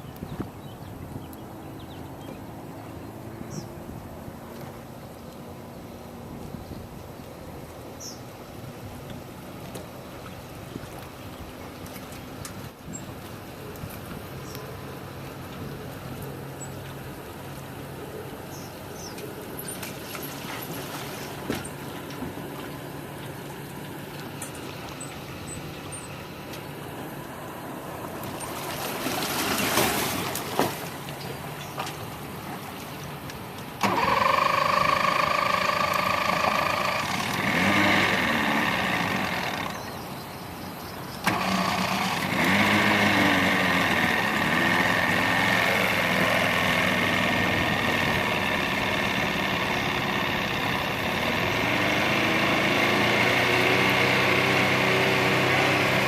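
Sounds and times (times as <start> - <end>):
engine running: 0.0 - 56.0
noisy rumble: 33.2 - 55.9.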